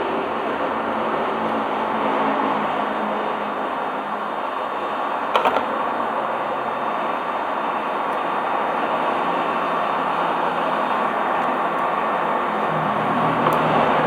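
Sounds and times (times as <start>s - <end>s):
hot-air station blowing: 0.0s - 14.0s
clicks: 11.2s - 14.0s.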